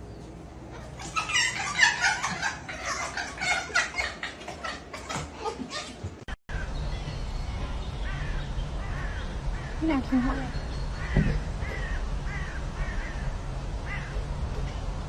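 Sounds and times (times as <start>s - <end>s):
pet animal high-pitched calls: 0.7s - 6.0s.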